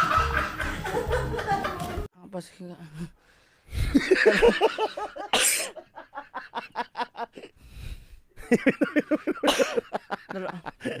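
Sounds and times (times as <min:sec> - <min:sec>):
man coughing: 0:05.2 - 0:05.8, 0:09.2 - 0:10.0.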